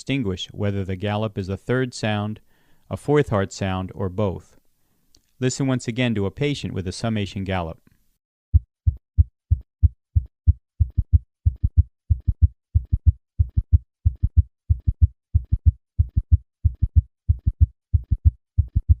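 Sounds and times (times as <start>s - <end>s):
galloping heartbeat thuds: 8.5s - 19.0s.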